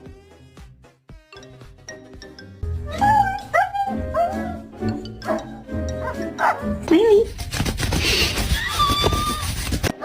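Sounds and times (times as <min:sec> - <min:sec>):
background music with plucked notes: 0:00.0 - 0:07.4.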